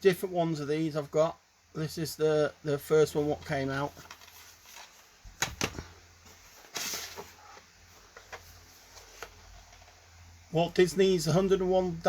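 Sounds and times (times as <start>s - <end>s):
plastic case sliding rustle: 3.9s - 10.0s.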